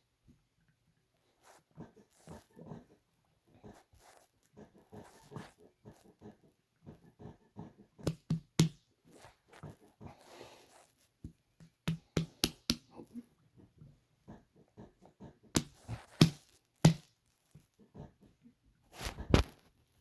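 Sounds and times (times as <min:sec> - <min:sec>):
stomach growling and sloshing: 0:01.6 - 0:08.0.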